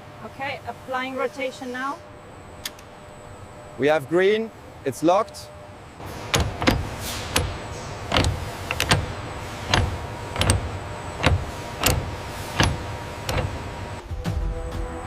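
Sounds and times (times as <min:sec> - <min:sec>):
low machinery hum: 0:00.0 - 0:15.0.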